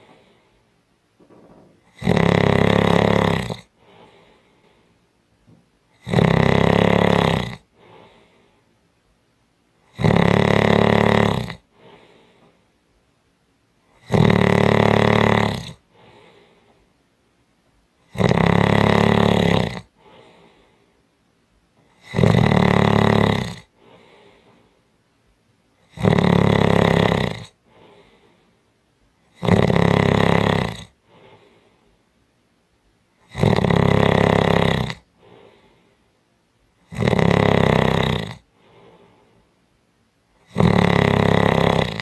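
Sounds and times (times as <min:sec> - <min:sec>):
quiet breath: 0:00.0 - 0:02.0, 0:03.6 - 0:06.0, 0:07.6 - 0:09.0, 0:11.6 - 0:12.9, 0:15.8 - 0:17.1, 0:19.8 - 0:22.1, 0:23.6 - 0:25.1, 0:27.4 - 0:29.4, 0:30.9 - 0:32.3, 0:35.0 - 0:36.9, 0:38.4 - 0:39.7
person snoring heavily: 0:01.6 - 0:04.4, 0:05.9 - 0:08.4, 0:09.9 - 0:12.3, 0:13.9 - 0:16.6, 0:18.1 - 0:20.7, 0:21.9 - 0:24.5, 0:25.8 - 0:28.2, 0:29.3 - 0:31.7, 0:33.2 - 0:35.8, 0:36.8 - 0:39.3, 0:40.4 - 0:42.0.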